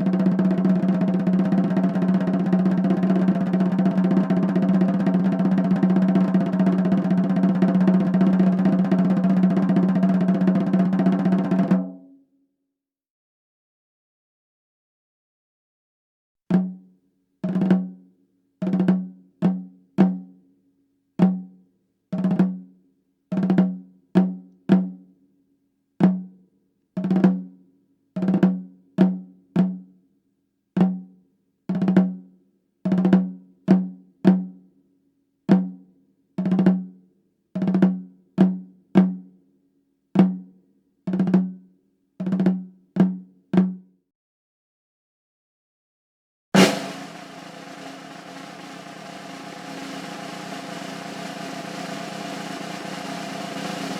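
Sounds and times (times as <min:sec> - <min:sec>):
snare drum hits: 0:46.6 - 0:53.9.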